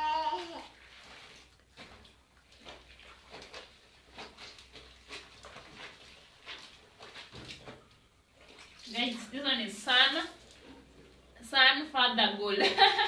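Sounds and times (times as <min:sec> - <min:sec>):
wavering bleat-like call: 0:00.0 - 0:00.6
clothes hand-washed in water: 0:00.0 - 0:11.4.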